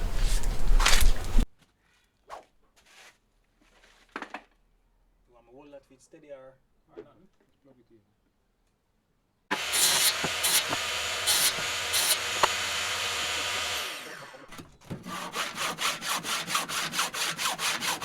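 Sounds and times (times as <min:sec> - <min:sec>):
circular saw cutting wood: 0:09.5 - 0:18.0
rasping strokes on wood: 0:09.6 - 0:14.1, 0:15.0 - 0:18.0.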